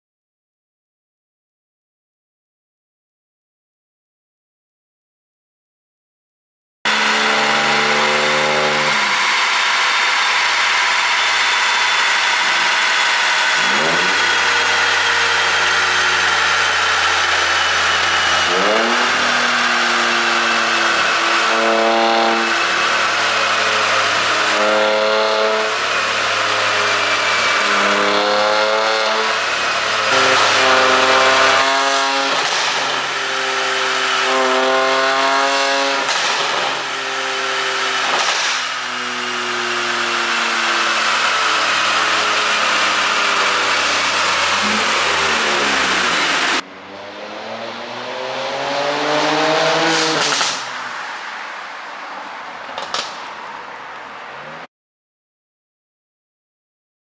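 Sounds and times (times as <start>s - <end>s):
car engine revving: 6.9s - 54.7s
exhaust pops and crackles: 52.8s - 53.3s.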